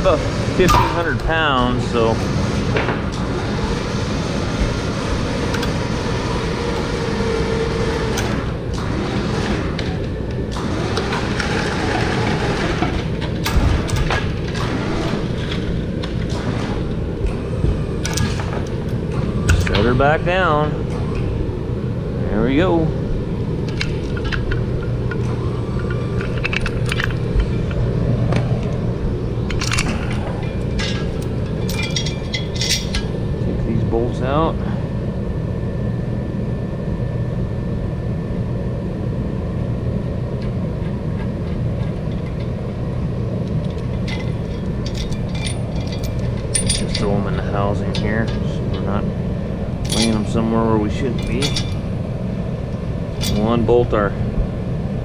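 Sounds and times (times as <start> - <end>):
lifting machinery rumbling: 0.0 - 55.0
metal parts clinking: 0.6 - 1.4, 18.0 - 20.0, 23.6 - 27.8, 29.4 - 33.2, 43.4 - 49.0, 49.8 - 51.9, 53.2 - 53.6.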